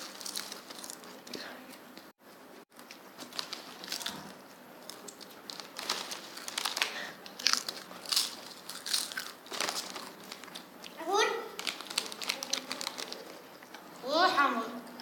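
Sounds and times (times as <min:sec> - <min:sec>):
potato chips crunching: 0:00.0 - 0:01.1, 0:02.8 - 0:11.0, 0:11.6 - 0:13.4.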